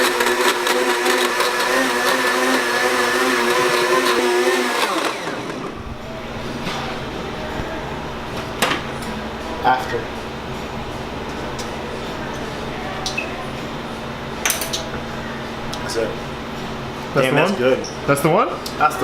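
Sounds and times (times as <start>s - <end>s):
blender motor running: 0.0s - 5.7s.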